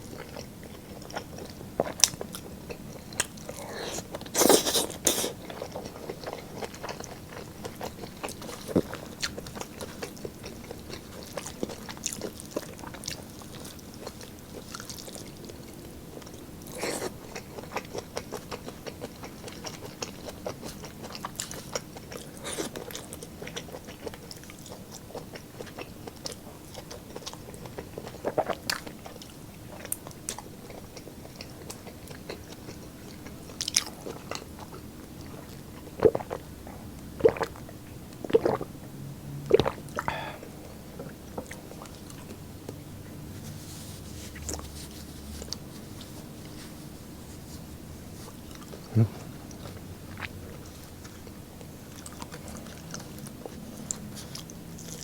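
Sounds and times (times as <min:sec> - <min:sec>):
chewing and crunching food: 0:00.0 - 0:55.0.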